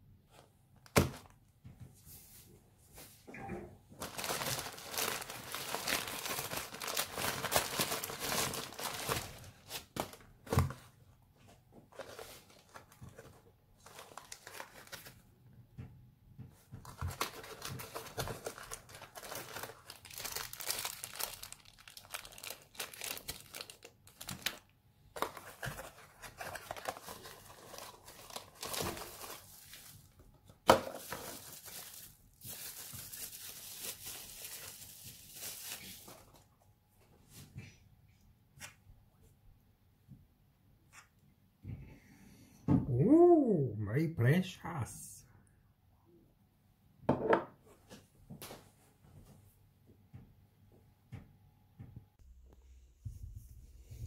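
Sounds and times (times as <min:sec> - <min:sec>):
plastic packaging crinkling: 0:04.0 - 0:10.6, 0:11.9 - 0:15.2, 0:16.8 - 0:36.4.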